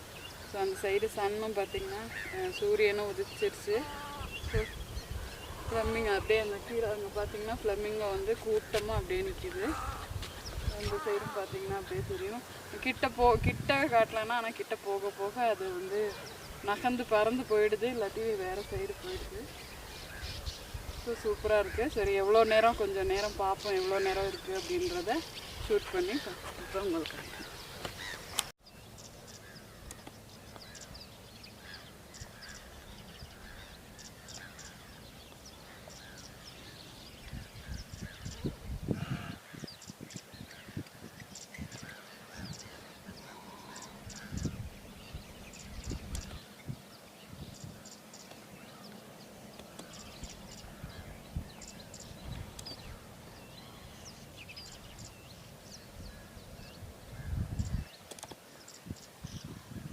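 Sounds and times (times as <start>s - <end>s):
waterbirds honking and gabbling: 0.0s - 39.8s, 40.4s - 46.6s.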